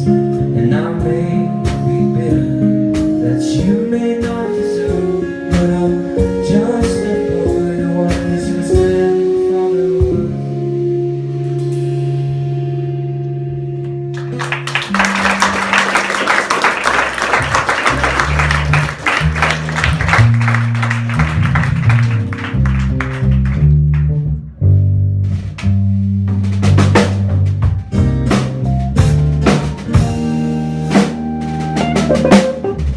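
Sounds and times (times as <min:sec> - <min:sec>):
bass guitar line: 0:00.0 - 0:32.9
electric guitar chord: 0:31.8 - 0:32.9
sharp drum hits: 0:31.8 - 0:32.9.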